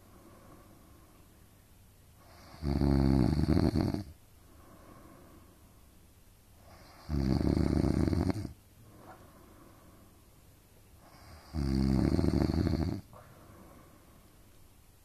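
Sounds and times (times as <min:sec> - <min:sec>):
soft breathing: 0:00.0 - 0:01.6, 0:04.4 - 0:06.0, 0:08.8 - 0:11.6, 0:13.0 - 0:14.7
person snoring loudly: 0:02.3 - 0:04.1, 0:06.8 - 0:08.5, 0:11.1 - 0:13.0.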